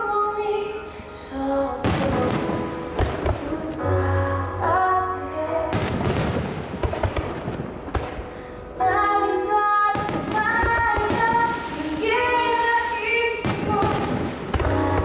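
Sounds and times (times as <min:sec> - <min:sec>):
music with singing: 0:00.0 - 0:06.5, 0:08.0 - 0:15.0
fireworks bursting with crackling: 0:01.4 - 0:03.9, 0:05.7 - 0:15.0.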